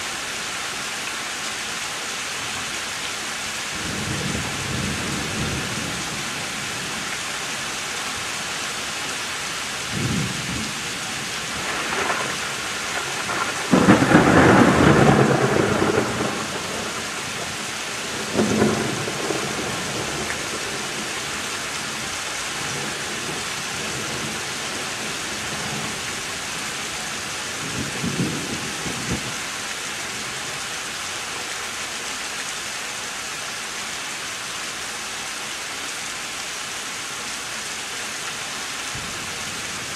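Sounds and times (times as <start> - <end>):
steady rain: 0.0 - 39.9
thunder rolling: 11.5 - 21.0.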